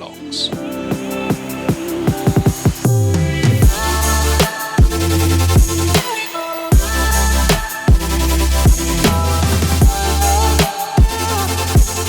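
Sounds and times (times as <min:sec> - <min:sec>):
electronic music with heavy drums: 0:00.0 - 0:12.0
deep bass line: 0:02.8 - 0:06.0, 0:06.7 - 0:12.0.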